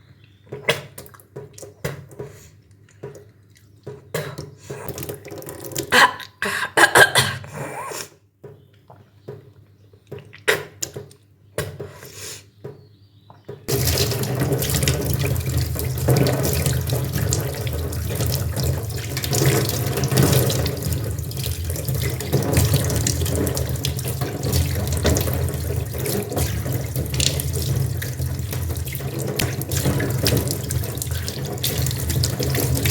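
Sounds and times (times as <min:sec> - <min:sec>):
tap water running into sink: 0:04.9 - 0:06.1, 0:13.7 - 0:32.9.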